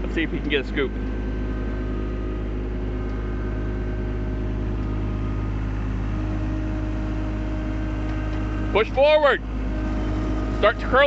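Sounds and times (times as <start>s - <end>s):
skid steer engine running: 0.0s - 11.0s.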